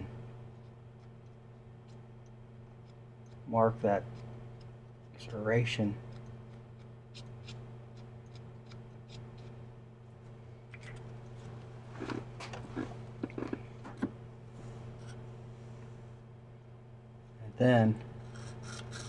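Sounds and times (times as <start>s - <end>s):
steady low hum: 0.0s - 19.0s
handling ticks: 0.6s - 9.6s.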